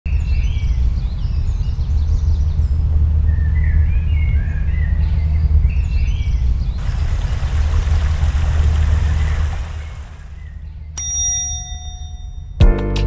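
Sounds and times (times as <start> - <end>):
songbirds chirping: 0.1 - 11.1
steady low rumble: 6.7 - 10.9.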